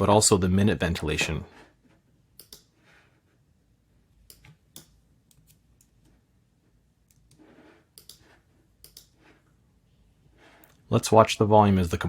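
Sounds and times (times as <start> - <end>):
faint computer mouse clicks: 8.8 - 9.1.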